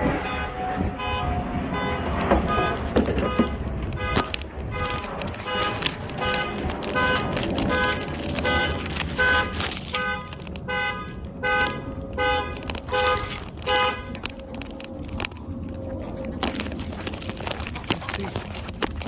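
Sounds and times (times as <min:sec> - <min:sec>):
truck alarm horn honks: 0:00.0 - 0:14.2.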